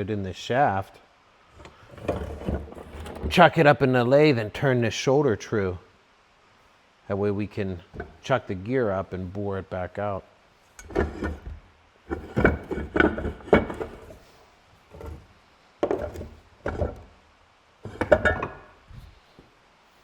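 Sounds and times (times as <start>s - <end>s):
metal parts clunking: 12.1s - 14.2s, 17.9s - 18.7s.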